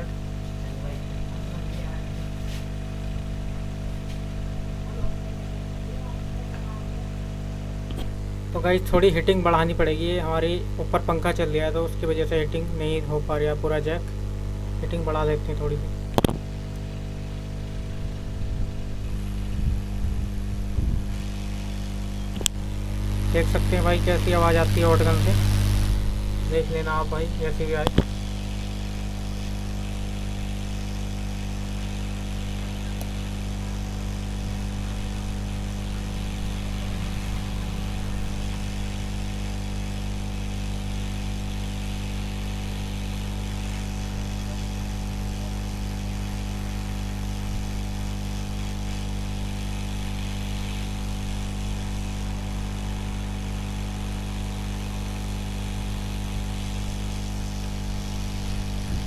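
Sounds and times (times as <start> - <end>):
hot air gun blowing: 17.2 - 59.0.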